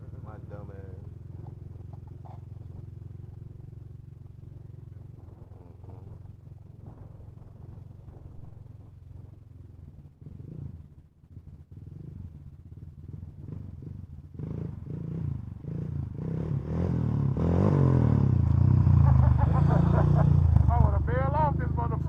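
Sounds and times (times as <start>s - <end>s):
atv engine revving: 11.8s - 22.0s.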